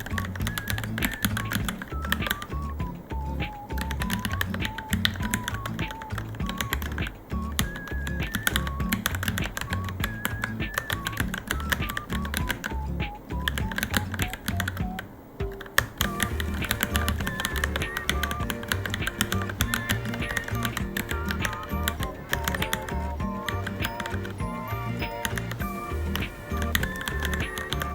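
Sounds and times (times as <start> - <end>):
music with bass beat: 0.0 - 27.9
mechanical keyboard typing: 3.5 - 12.7, 15.6 - 27.9.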